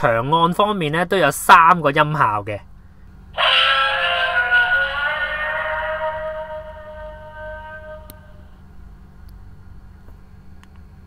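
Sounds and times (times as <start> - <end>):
electronic monster cry from toy speaker: 3.4 - 8.6.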